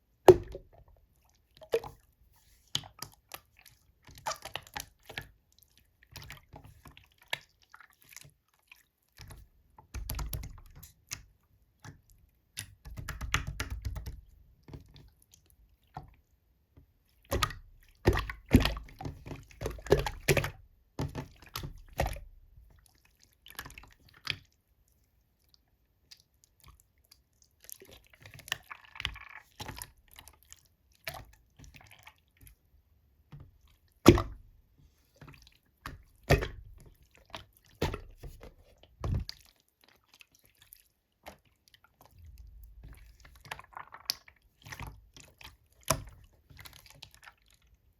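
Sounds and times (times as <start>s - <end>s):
slime squelching and clicking: 35.2s - 47.6s.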